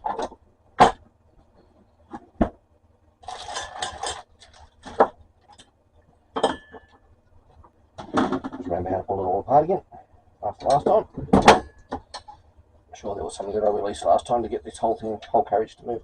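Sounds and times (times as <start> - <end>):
metal parts clattering: 3.2 - 5.0
metallic clinks and knocks: 6.3 - 7.1.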